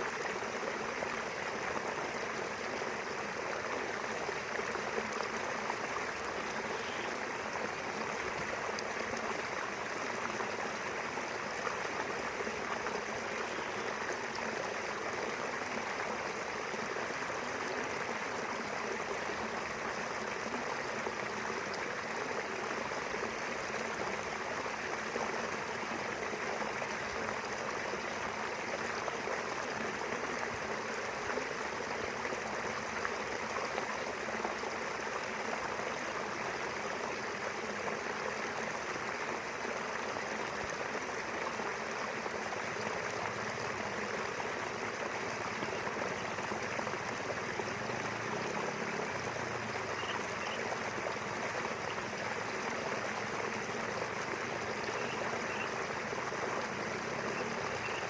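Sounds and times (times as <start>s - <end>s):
river water rushing and gurgling: 0.0s - 58.0s.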